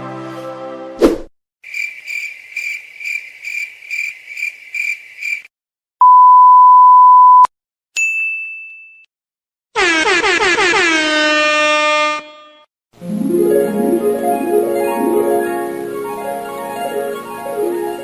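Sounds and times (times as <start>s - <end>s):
cricket chirping: 1.6s - 5.5s
censor bleep: 6.0s - 7.5s.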